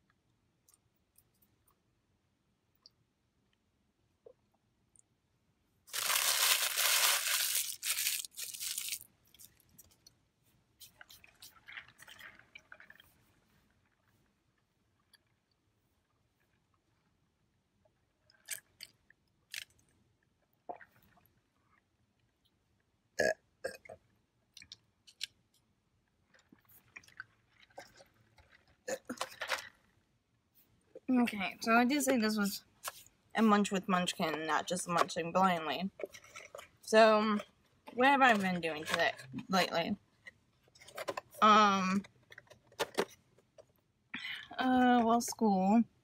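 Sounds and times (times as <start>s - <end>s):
crunching food: 5.9s - 10.1s, 18.3s - 19.9s
woman burping: 23.2s - 23.9s.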